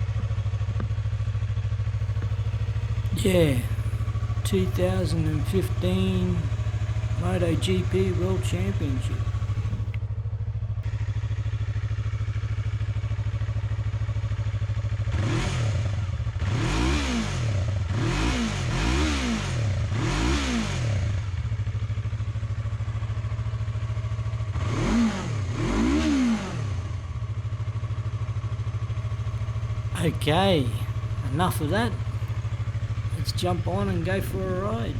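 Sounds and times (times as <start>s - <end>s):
engine throttle blips: 2.1s - 10.0s, 29.2s - 34.9s
motorcycle engine idling: 2.1s - 10.0s, 29.1s - 34.9s.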